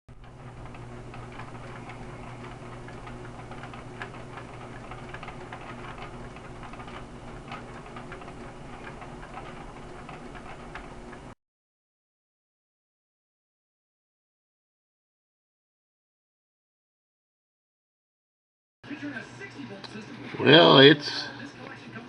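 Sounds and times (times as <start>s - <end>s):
low electrical hum: 0.1s - 11.4s.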